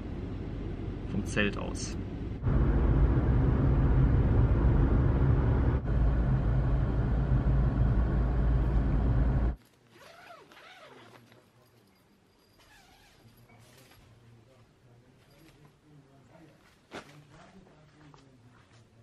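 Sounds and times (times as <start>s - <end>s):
car engine and road noise: 0.0s - 9.6s.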